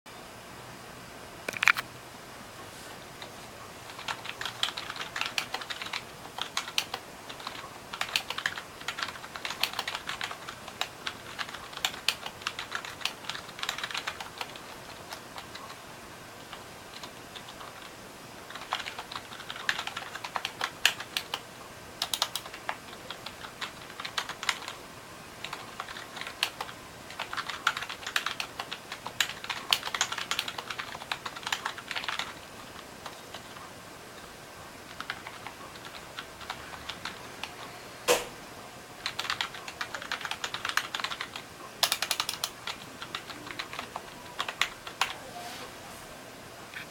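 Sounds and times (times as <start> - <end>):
keyboard key clicks: 1.5 - 1.8.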